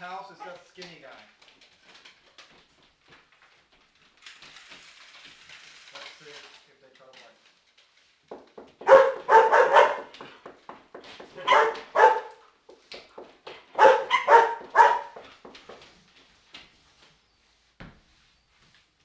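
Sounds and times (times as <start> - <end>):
small dogs barking: 8.8 - 10.2, 11.4 - 12.4, 13.8 - 15.2.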